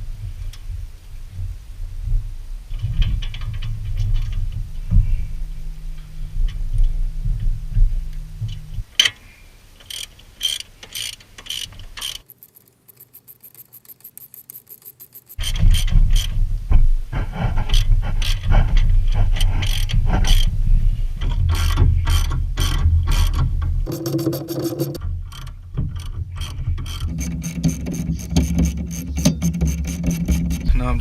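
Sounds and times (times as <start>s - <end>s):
low rumble: 0.0s - 9.8s, 15.4s - 25.0s
ratchet wrench clicking: 9.8s - 16.3s, 19.6s - 20.5s.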